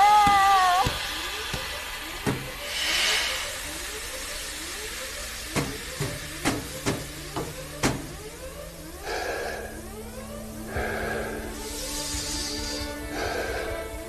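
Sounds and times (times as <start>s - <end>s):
short hiss: 1.0s - 7.1s
sharp knocks: 5.6s - 8.2s.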